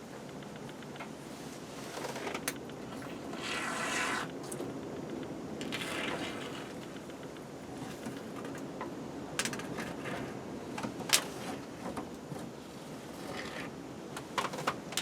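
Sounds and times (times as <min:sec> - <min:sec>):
faint rustling and scraping: 0:05.6 - 0:08.6, 0:09.5 - 0:13.8.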